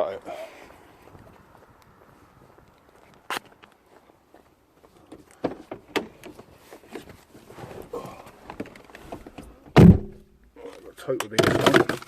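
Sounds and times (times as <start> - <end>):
loud thump: 9.7 - 10.3.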